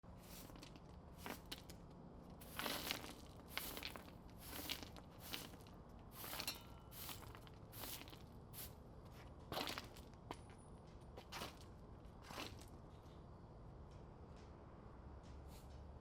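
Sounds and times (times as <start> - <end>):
broom sweeping rocks on concrete: 0.2 - 1.7, 2.4 - 8.8.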